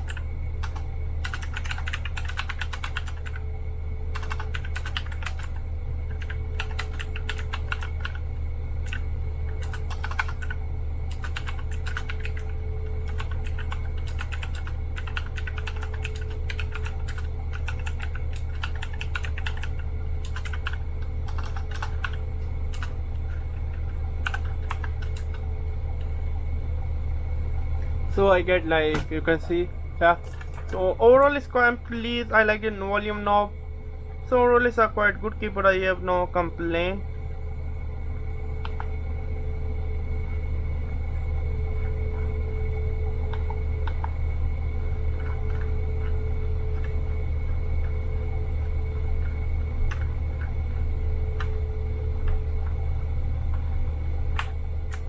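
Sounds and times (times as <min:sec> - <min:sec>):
mechanical keyboard typing: 0:00.0 - 0:03.4, 0:04.1 - 0:08.2, 0:08.8 - 0:09.0, 0:09.6 - 0:23.0, 0:24.2 - 0:25.4.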